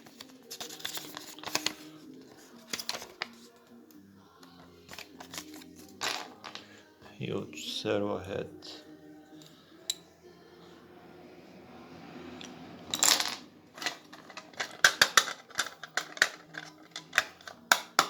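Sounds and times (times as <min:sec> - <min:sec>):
small hard parts clicking: 0:13.8 - 0:18.0.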